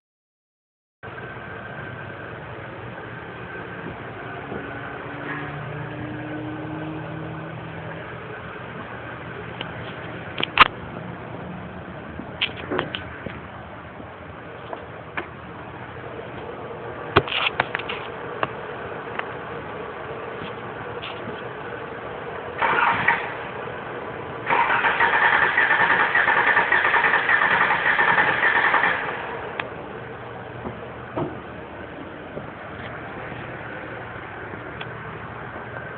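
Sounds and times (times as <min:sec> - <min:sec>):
car engine idling with misfire: 0:12.0 - 0:35.9
engine starter cranking: 0:22.6 - 0:23.4, 0:24.4 - 0:29.4.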